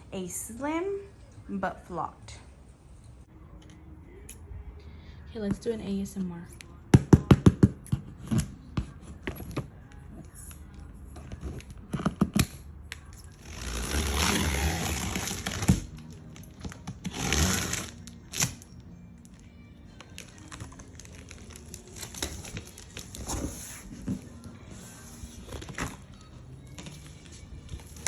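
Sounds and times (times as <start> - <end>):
cardboard tearing and scraping: 13.4 - 16.0, 17.0 - 18.6.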